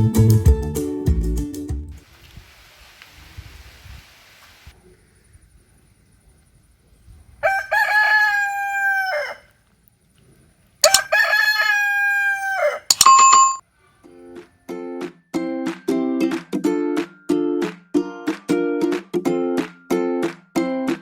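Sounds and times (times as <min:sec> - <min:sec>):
rooster crowing: 0:07.4 - 0:09.5, 0:10.8 - 0:12.9.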